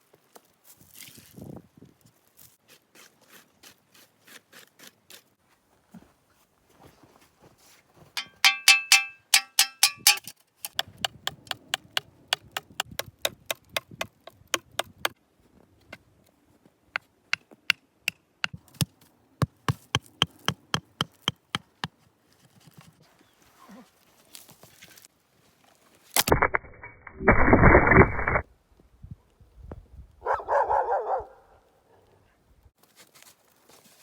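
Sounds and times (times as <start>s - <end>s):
hand tool strikes: 8.2s - 12.4s.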